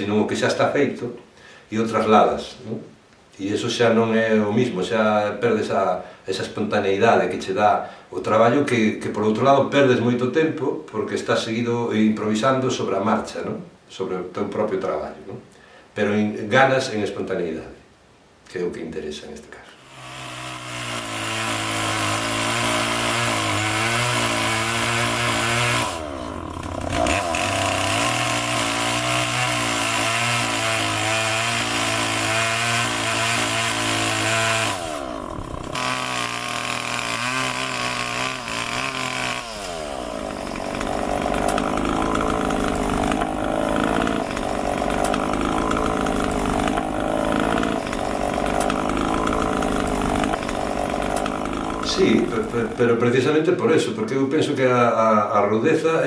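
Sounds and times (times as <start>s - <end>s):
chainsaw cutting wood: 19.8s - 53.2s.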